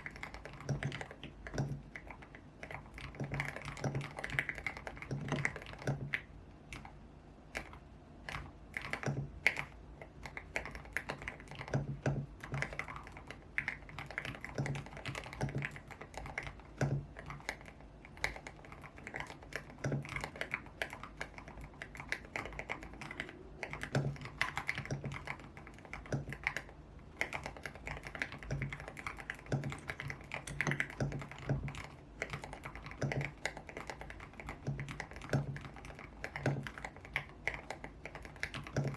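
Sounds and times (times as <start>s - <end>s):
mechanical keyboard typing: 0.0s - 38.9s.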